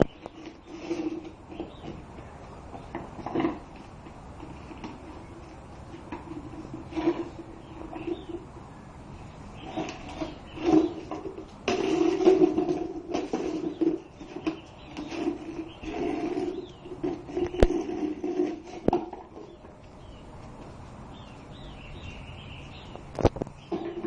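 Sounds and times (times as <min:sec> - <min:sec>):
small birds chirping: 0:00.0 - 0:03.8, 0:04.5 - 0:11.6, 0:13.1 - 0:18.4, 0:19.2 - 0:24.0
container scraping: 0:00.0 - 0:08.5, 0:09.6 - 0:19.6, 0:23.6 - 0:24.0.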